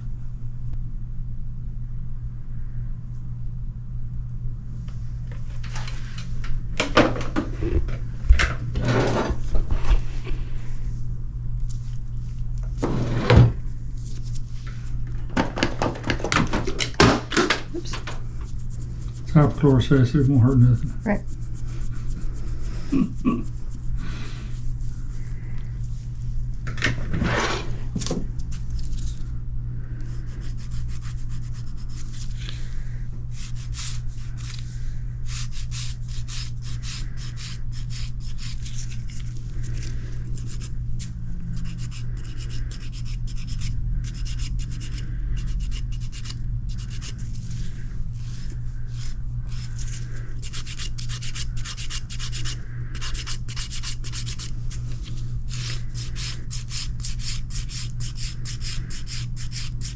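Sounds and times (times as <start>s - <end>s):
steady low hum: 0.0s - 59.9s
nail file scraping toenail: 30.0s - 32.6s, 33.3s - 34.6s, 35.3s - 59.9s.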